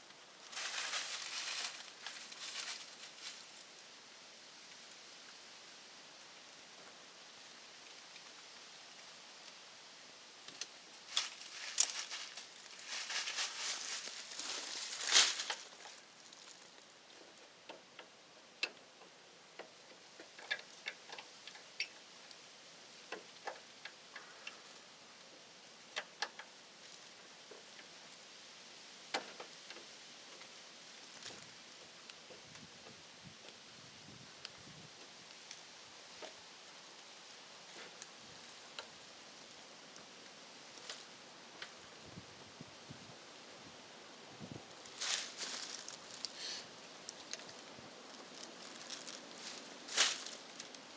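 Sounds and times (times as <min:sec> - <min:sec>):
rustling: 0:00.4 - 0:03.7, 0:10.6 - 0:16.9, 0:44.6 - 0:50.9.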